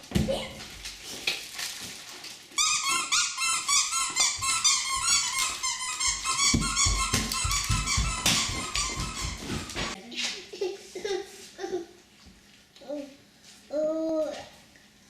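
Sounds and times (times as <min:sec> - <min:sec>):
squeaky dog toy squeaking: 0:02.6 - 0:10.0.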